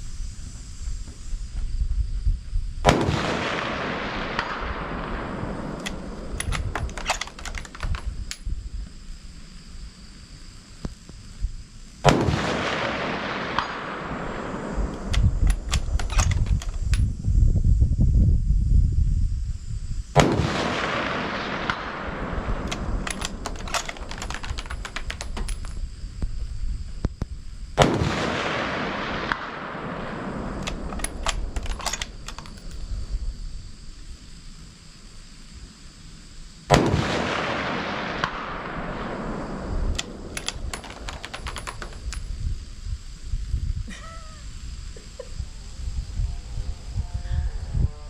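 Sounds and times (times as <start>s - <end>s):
rifle shot with echo: 2.8s - 8.0s, 12.0s - 17.0s, 20.2s - 25.7s, 27.8s - 32.8s, 36.7s - 42.2s
sharp clicks: 5.6s - 8.5s, 14.9s - 17.1s, 22.6s - 25.9s, 30.6s - 32.9s, 39.9s - 42.3s.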